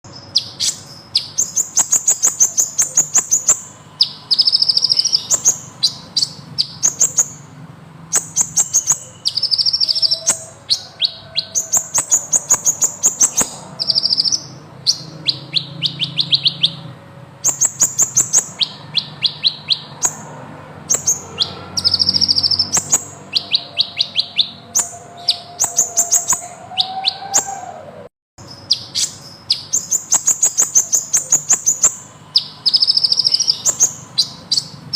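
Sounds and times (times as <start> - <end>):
bird singing rapid trills: 0.1 - 27.8, 28.4 - 34.9.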